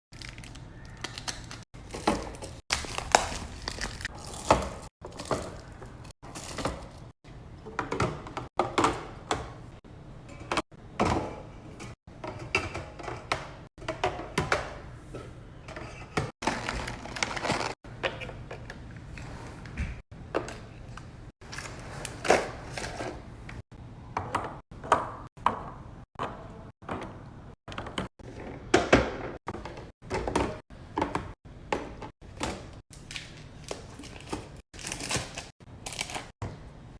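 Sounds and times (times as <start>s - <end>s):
items knocking and thudding: 1.8s - 9.7s, 10.3s - 18.7s, 24.1s - 32.8s.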